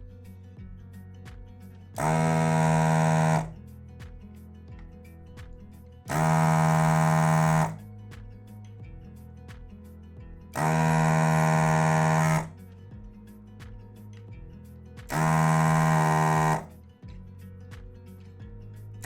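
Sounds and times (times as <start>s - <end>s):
background music with ticking beat: 0.0s - 19.0s
vacuum pump buzzing: 2.0s - 3.6s, 6.1s - 7.8s, 10.6s - 12.6s, 15.1s - 16.7s.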